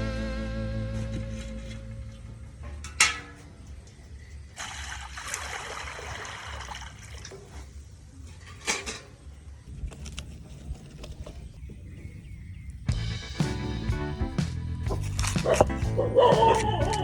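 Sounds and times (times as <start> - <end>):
water pouring: 4.6 - 7.6.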